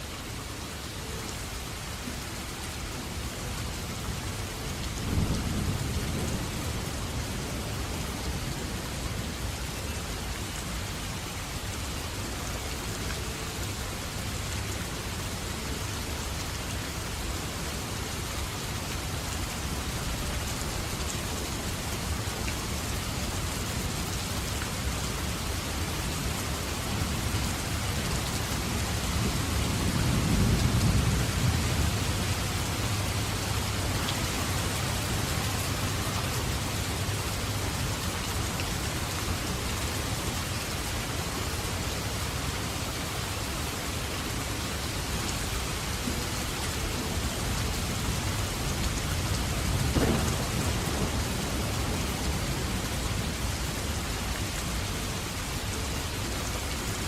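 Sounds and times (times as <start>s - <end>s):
heavy rain: 0.0s - 57.0s
low thunder rumble: 48.8s - 53.3s.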